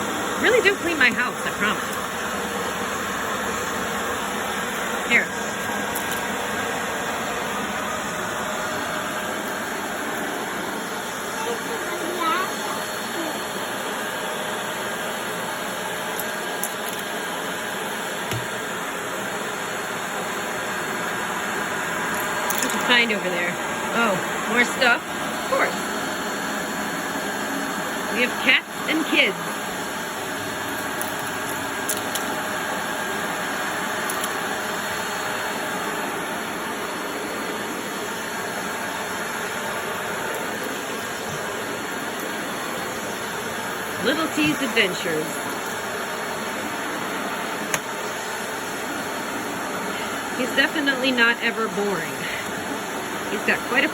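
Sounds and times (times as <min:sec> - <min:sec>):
vacuum cleaner running: 0:00.0 - 0:53.9.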